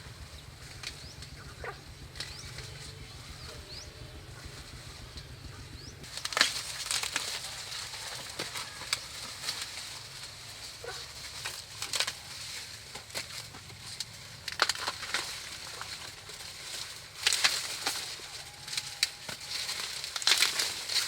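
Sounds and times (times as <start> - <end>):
foliage rustling: 0.0 - 21.0
twigs snapping: 5.7 - 21.0.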